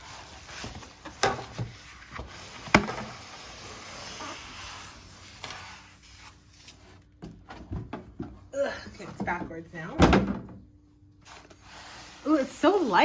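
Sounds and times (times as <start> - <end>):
cardboard sliding and scraping: 0.0 - 7.0, 11.2 - 13.0.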